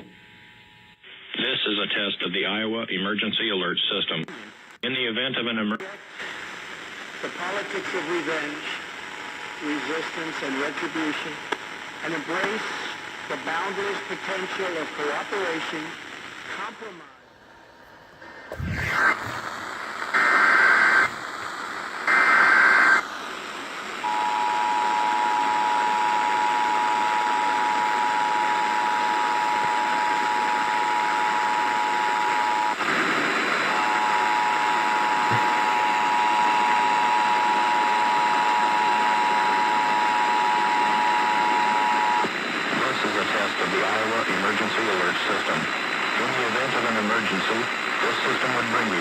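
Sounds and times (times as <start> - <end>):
radio hiss: 1.0 - 49.0
warbling data tones: 18.5 - 19.6.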